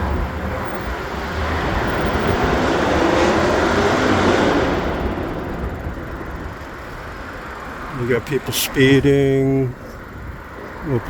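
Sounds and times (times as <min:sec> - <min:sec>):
car speeding past: 0:00.0 - 0:06.6.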